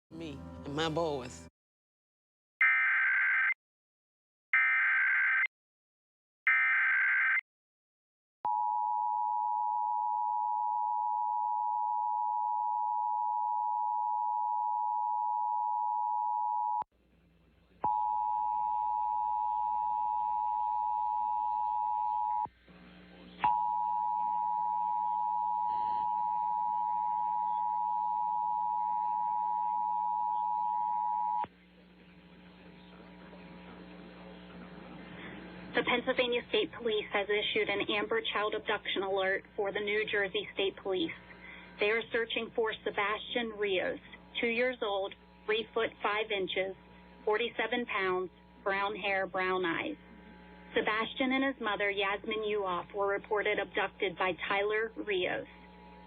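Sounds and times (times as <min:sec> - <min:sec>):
low hum: 0:00.1 - 0:01.5.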